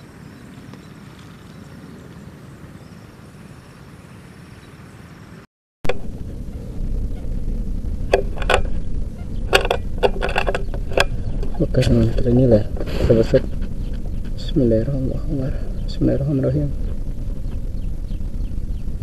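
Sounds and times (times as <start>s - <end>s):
faint outdoor noise: 0.0s - 19.0s
low rumble: 5.8s - 19.0s.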